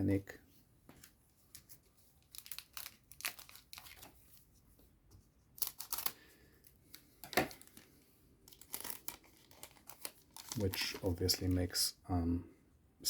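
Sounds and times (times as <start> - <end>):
foil wrapper crinkling and tearing: 2.2 - 4.5, 5.5 - 11.6.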